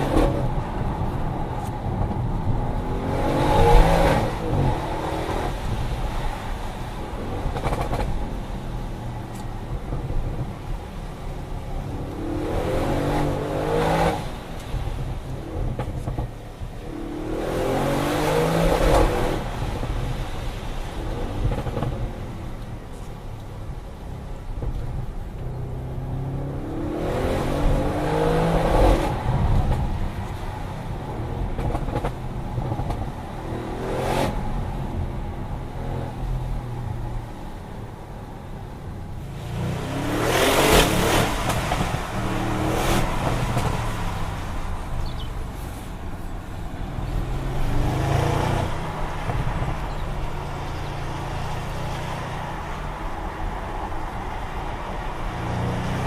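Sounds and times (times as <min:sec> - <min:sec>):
car engine accelerating: 0:39.2 - 0:54.1.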